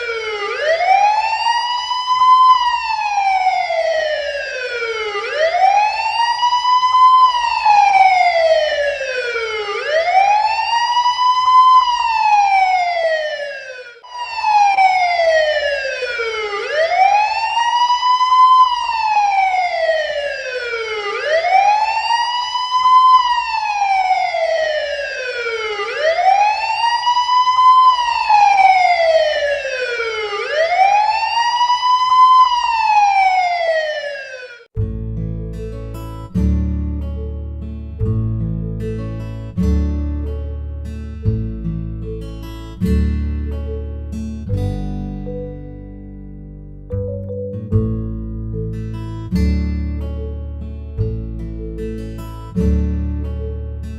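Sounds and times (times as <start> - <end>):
police siren wailing: 0.0 - 34.8.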